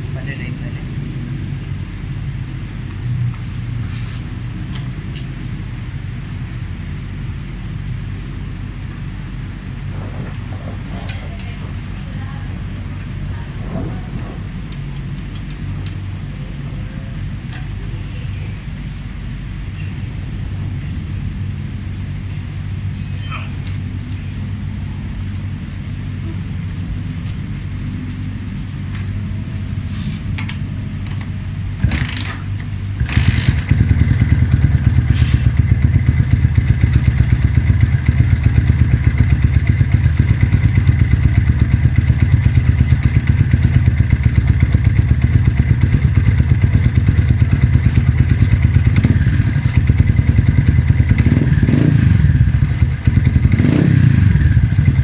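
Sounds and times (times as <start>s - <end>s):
motorcycle engine idling: 31.9s - 55.0s.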